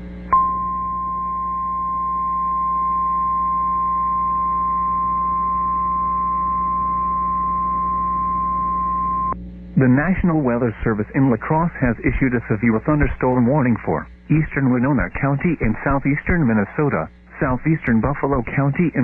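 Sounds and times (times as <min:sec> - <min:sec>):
receiver hum and static: 0:00.0 - 0:19.0
steady pure alarm tone: 0:00.3 - 0:09.5.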